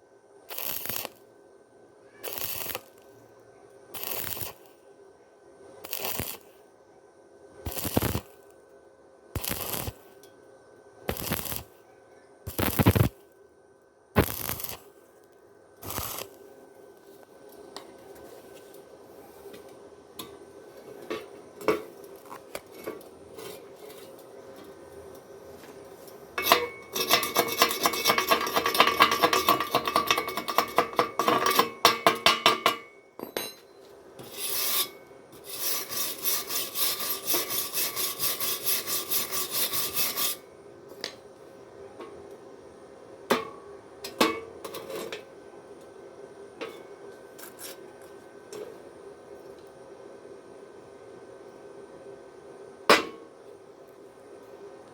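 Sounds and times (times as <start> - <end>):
scraping strokes on metal: 2.2 - 3.0, 9.4 - 10.1, 15.8 - 16.3, 26.4 - 32.9, 34.2 - 40.5.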